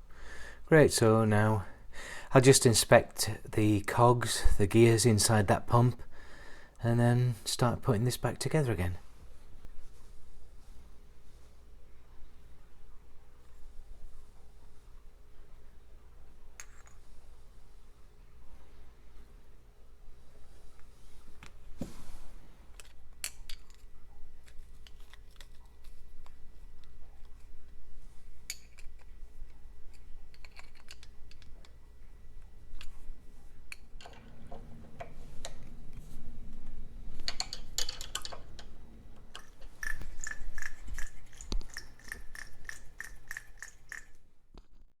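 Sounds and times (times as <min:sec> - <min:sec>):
metal parts clicking and clinking: 0:30.3 - 0:31.5, 0:37.2 - 0:38.7.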